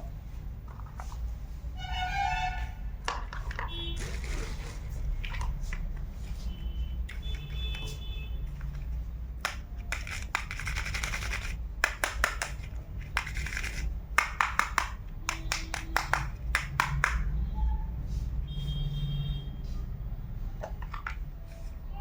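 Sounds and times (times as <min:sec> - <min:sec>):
plastic toy pieces scraping: 0:04.0 - 0:05.0, 0:09.4 - 0:14.8
plastic toy pieces clicking: 0:09.4 - 0:17.2.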